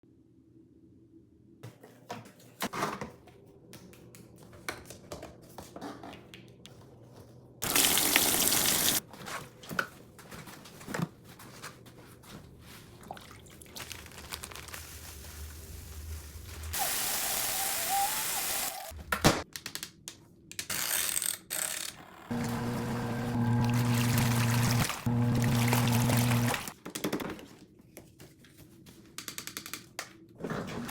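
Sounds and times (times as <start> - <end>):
water running from a tap: 7.6 - 9.0, 22.3 - 26.8.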